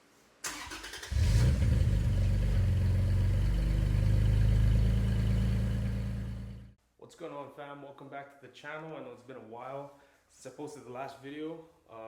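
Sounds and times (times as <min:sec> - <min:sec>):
loud low exhaust note: 0:01.2 - 0:06.8.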